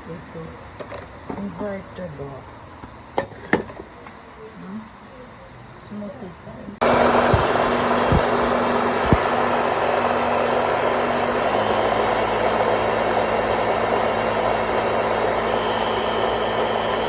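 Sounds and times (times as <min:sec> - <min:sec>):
blender motor whirring: 0:06.8 - 0:17.0.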